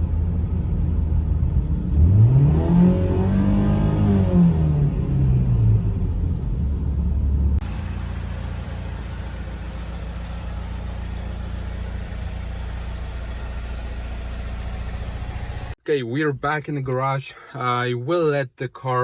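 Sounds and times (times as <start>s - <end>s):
car engine idling: 7.6s - 15.8s
car engine revs falling: 7.6s - 15.8s.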